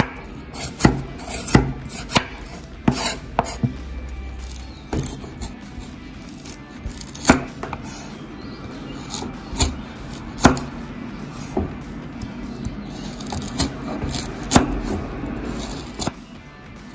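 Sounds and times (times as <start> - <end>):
knife chopping on wooden board: 0.0 - 3.8, 4.9 - 10.8, 11.4 - 16.2.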